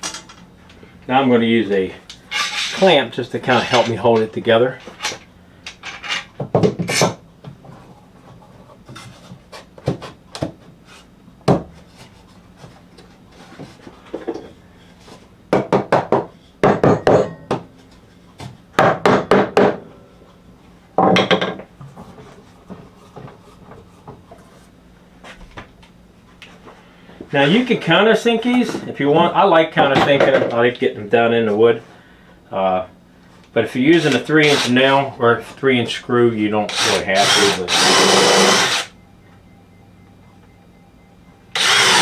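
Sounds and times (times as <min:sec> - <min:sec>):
screws driven into wood: 0:36.7 - 0:38.9, 0:41.6 - 0:42.0.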